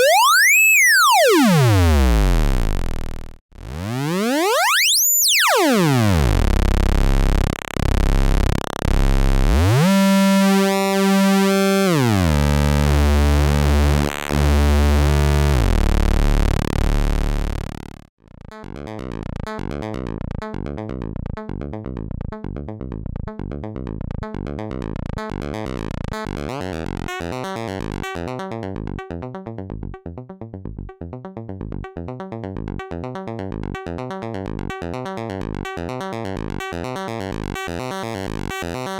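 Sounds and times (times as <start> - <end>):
steady low synth tone: 0.0 - 4.7, 5.4 - 18.1
sweeping oscillator tone: 0.0 - 18.1
sequenced synth notes: 0.0 - 20.2.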